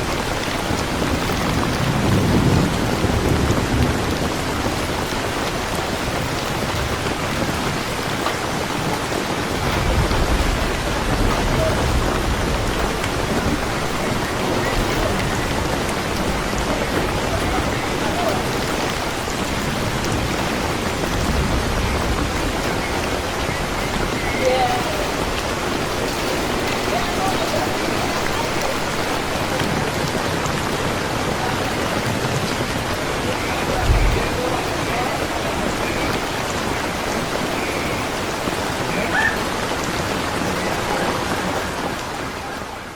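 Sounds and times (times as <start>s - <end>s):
heavy rain splashing: 0.0s - 42.9s.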